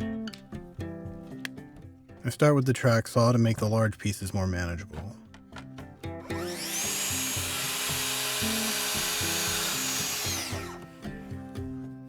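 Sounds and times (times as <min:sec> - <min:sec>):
track saw cutting plywood: 0:06.2 - 0:11.2.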